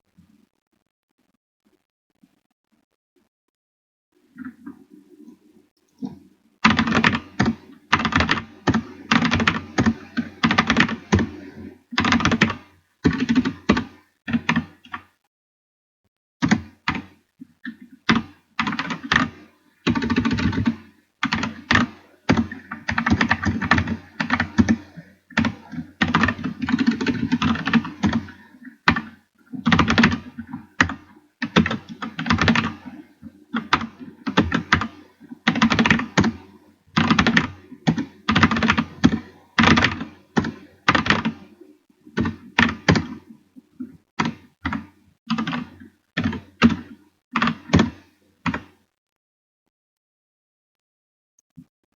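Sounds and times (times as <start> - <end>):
fast dense clicking and clattering: 17.7 - 41.5.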